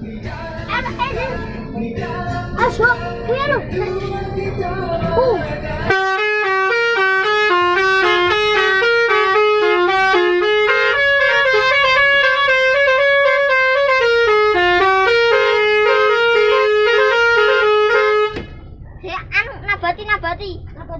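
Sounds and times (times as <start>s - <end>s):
bus musical horn playing a tune: 2.2s - 18.7s.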